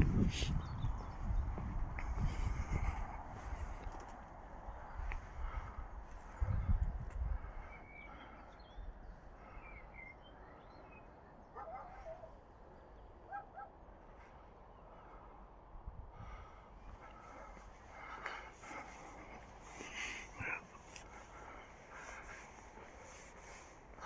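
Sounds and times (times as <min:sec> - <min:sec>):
birds chirping and calling: 0:00.0 - 0:04.1
wind rumble on microphone: 0:00.0 - 0:09.6, 0:15.4 - 0:19.7.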